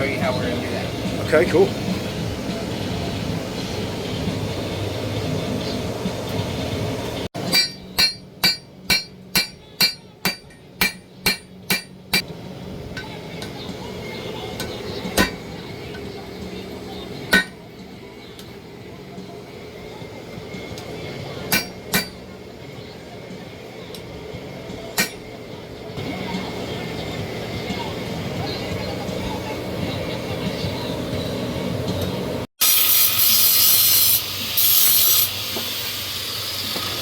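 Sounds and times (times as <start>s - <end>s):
hammer striking blade on anvil: 7.4s - 12.2s, 14.6s - 15.4s, 17.3s - 17.6s, 21.5s - 22.2s, 25.0s - 25.3s.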